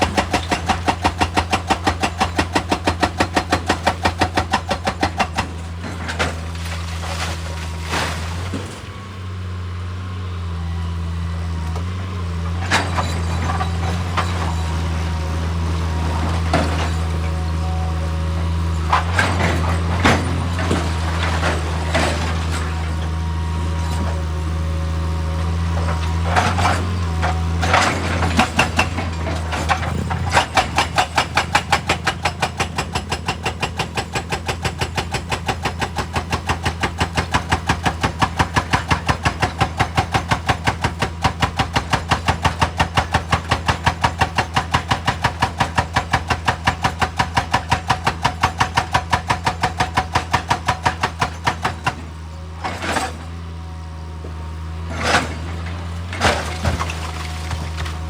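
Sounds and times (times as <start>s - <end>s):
heavy diesel machinery running: 0.0s - 58.0s
knocks and clanks: 18.9s - 23.0s, 25.8s - 53.4s.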